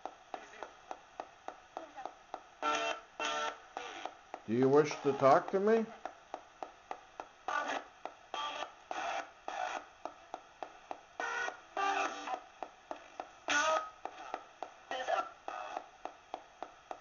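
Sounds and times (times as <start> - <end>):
radio scanning clicks: 0.0 - 6.5, 7.2 - 17.0
snatches of broadcast music: 0.0 - 17.0
snatches of broadcast voices: 0.3 - 0.8, 1.8 - 6.0, 7.5 - 9.9, 13.0 - 15.9.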